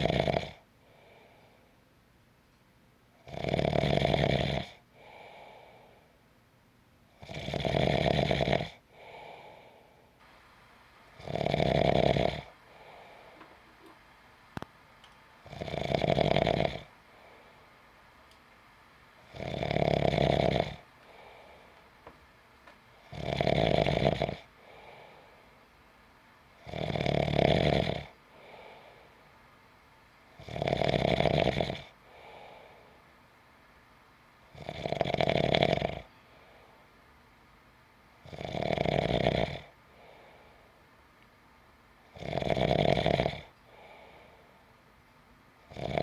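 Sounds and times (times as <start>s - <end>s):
faint breath out: 0.8s - 1.8s, 4.9s - 6.2s, 8.9s - 10.2s, 12.2s - 14.1s, 17.0s - 17.8s, 21.0s - 21.9s, 24.6s - 25.6s, 28.3s - 29.4s, 32.0s - 33.1s, 36.1s - 37.0s, 39.9s - 40.8s, 43.6s - 44.8s
person snoring: 3.3s - 5.6s, 7.2s - 9.6s, 11.1s - 14.0s, 15.4s - 17.7s, 19.2s - 21.8s, 23.0s - 25.4s, 26.6s - 29.1s, 30.4s - 32.8s, 34.6s - 36.1s, 38.3s - 40.3s, 42.2s - 44.2s, 45.7s - 46.0s.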